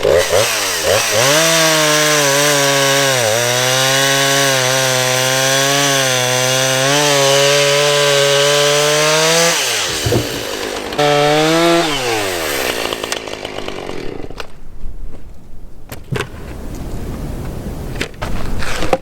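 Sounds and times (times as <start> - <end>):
chainsaw cutting log: 0.0 - 14.6.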